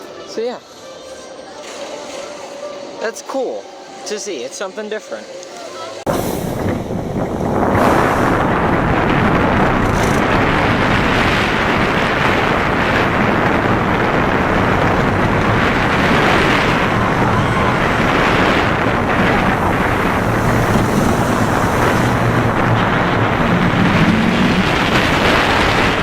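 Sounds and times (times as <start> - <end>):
roller coaster train rumbling: 5.8 - 26.0
wind rushing over microphone: 6.0 - 26.0.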